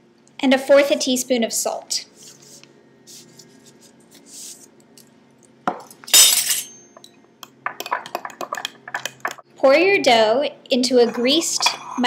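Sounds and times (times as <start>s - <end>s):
spoon tapping bowl: 7.0s - 9.4s.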